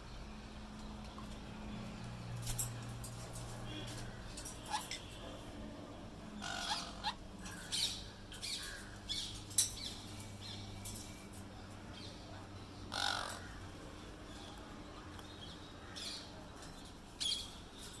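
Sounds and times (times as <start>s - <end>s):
birds squawking and chirping: 3.3s - 5.2s, 6.3s - 11.1s, 11.9s - 18.0s.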